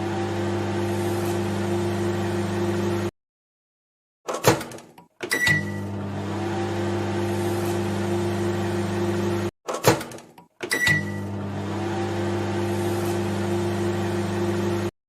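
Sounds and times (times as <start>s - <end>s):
microwave oven humming: 0.0s - 3.1s, 5.3s - 9.5s, 10.7s - 14.9s
microwave clicks: 4.3s - 5.9s
microwave beep: 5.2s - 7.4s, 10.6s - 12.8s.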